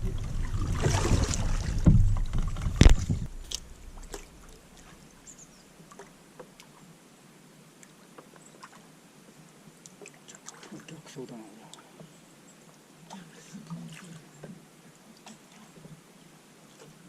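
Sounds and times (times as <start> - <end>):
low rumble: 0.0 - 4.8
sharp knock on boat: 0.8 - 3.5.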